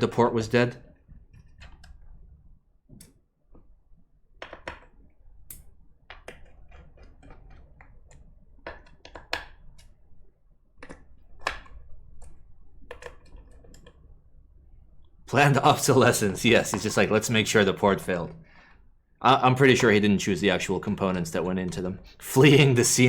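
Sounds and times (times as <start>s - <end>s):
keyboard parts clicking and tapping: 0.8s - 14.3s, 15.5s - 17.7s.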